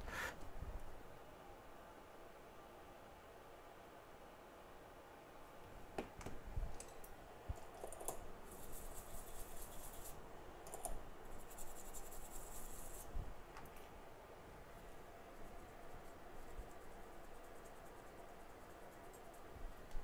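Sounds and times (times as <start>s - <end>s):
light clicks and taps of tools: 6.0s - 8.2s.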